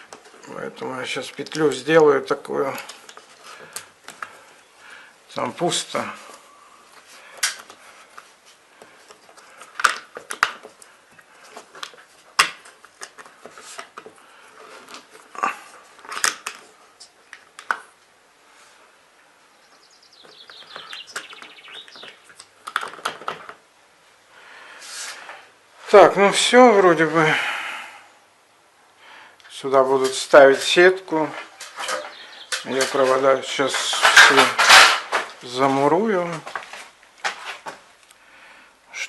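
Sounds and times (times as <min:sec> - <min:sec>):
electrical wires clicking and rustling: 0:00.0 - 0:04.6, 0:05.4 - 0:18.1, 0:20.2 - 0:23.6, 0:29.4 - 0:38.2.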